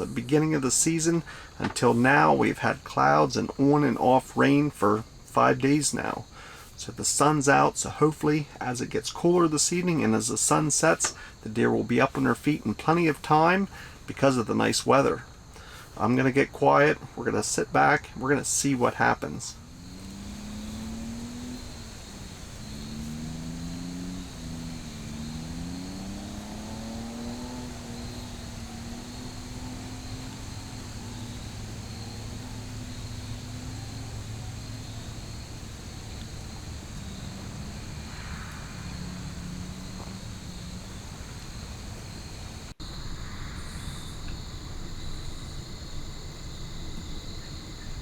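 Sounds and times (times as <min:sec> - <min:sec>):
distant engine droning: 0:00.0 - 0:03.1, 0:19.5 - 0:48.0
high-pitched background hum: 0:19.5 - 0:39.6.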